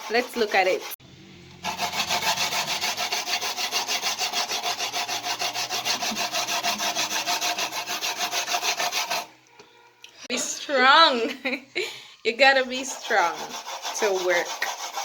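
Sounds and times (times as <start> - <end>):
coconut grating rasping: 0.0 - 9.3, 12.4 - 15.0.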